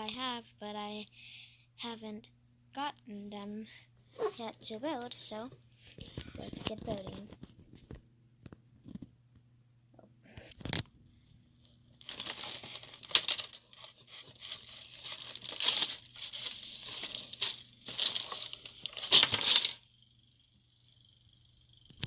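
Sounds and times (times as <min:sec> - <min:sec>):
packaging crinkling and tearing: 0:12.0 - 0:19.8.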